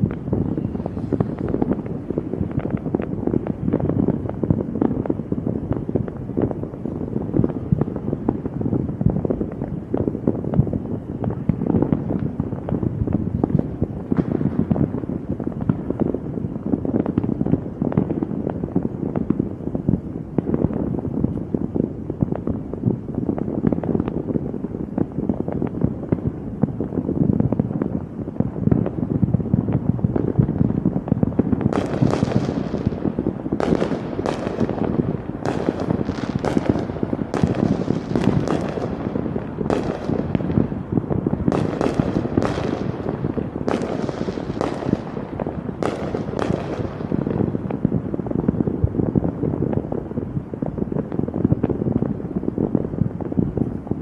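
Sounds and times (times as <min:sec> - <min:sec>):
sharp firework bangs: 0:00.0 - 0:19.5, 0:28.6 - 0:50.0
fireworks crackling pops: 0:00.0 - 0:54.0.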